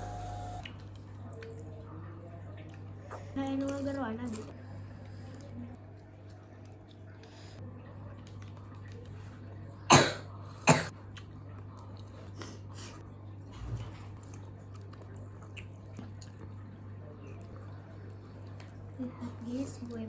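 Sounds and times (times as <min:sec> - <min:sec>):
person coughing: 0:09.9 - 0:10.9
chewing and mouth clicks: 0:13.6 - 0:16.6.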